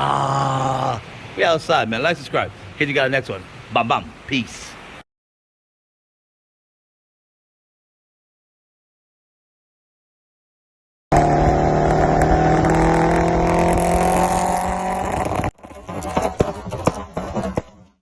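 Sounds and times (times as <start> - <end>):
car engine at high revs: 11.1 - 17.2.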